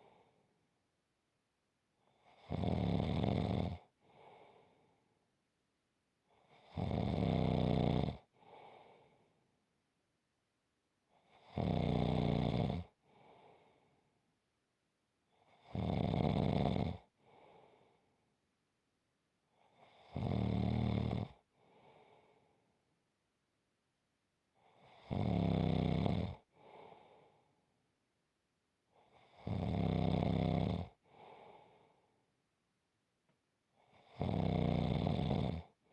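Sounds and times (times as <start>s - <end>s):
soft breath: 0.0s - 0.6s, 4.0s - 5.2s, 8.3s - 9.5s, 13.0s - 14.2s, 17.2s - 18.2s, 21.5s - 22.8s, 26.4s - 27.7s, 31.0s - 32.3s
loud snoring: 2.2s - 3.9s, 6.5s - 8.3s, 11.3s - 13.0s, 15.5s - 17.1s, 19.8s - 21.4s, 24.7s - 26.5s, 29.1s - 31.3s, 33.9s - 35.8s.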